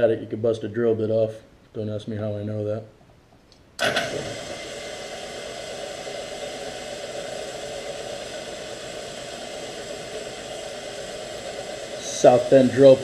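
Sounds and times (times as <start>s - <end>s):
drill press drilling metal: 3.8s - 5.3s.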